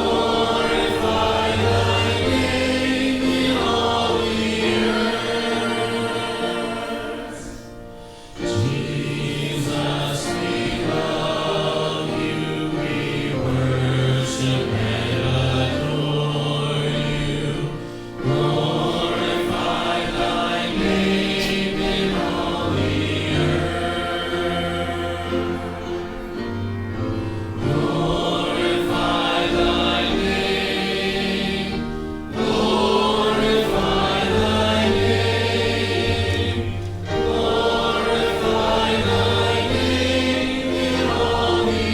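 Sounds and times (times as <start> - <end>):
accompaniment holding long low notes: 0.0 - 41.9
group singing a hymn: 0.0 - 41.9.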